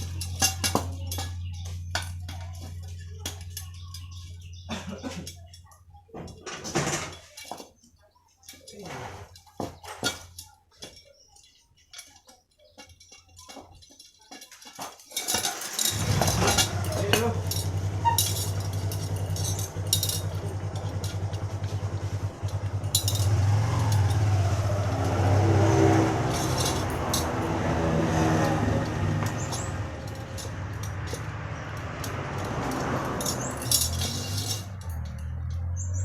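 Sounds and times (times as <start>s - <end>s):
engine running: 0.0s - 5.2s, 15.5s - 36.0s
light metallic clicks and clinks: 0.0s - 36.0s.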